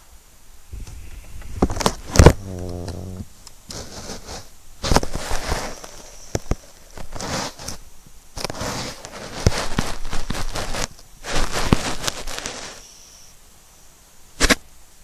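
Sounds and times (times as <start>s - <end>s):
dog snoring: 1.8s - 3.8s.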